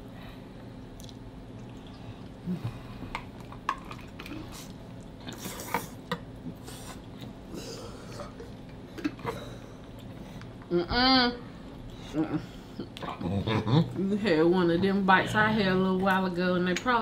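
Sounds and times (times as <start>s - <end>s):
wet eating sounds: 0.6s - 10.7s.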